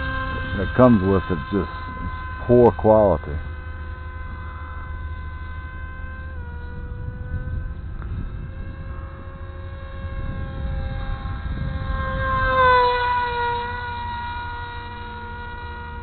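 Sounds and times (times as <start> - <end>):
model plane motor whine: 0.0 - 16.0.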